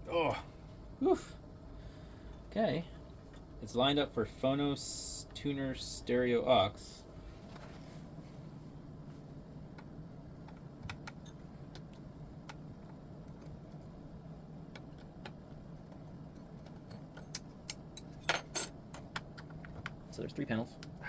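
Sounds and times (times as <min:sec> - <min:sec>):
low steady hum: 0:00.0 - 0:21.0
small parts clicking and tapping: 0:14.7 - 0:20.0.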